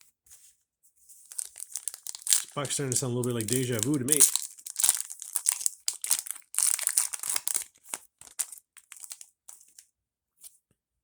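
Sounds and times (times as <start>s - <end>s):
plastic wrapper crinkling: 1.2s - 9.8s.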